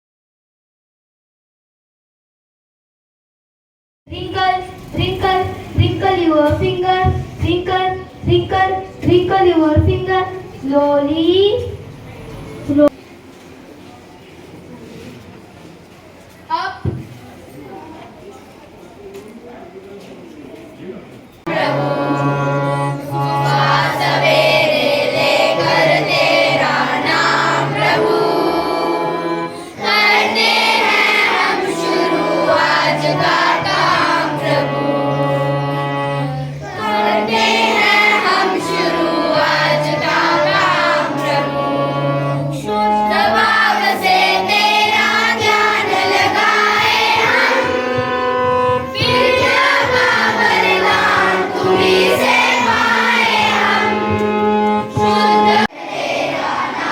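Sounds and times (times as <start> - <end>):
children singing together: 21.4 - 56.9
low instrumental notes: 21.5 - 56.9.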